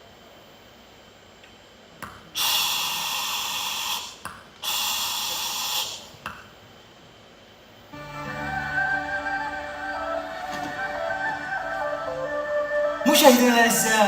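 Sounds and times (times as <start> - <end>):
static hiss: 2.0 - 7.1.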